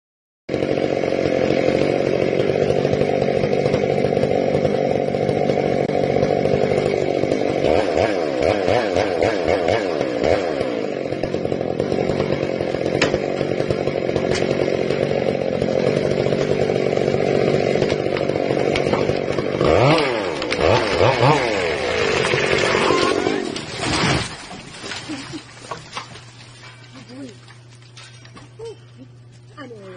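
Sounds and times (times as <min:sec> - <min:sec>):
chainsaw cutting into tree: 0:00.5 - 0:29.0
sharp cracks: 0:17.4 - 0:26.3.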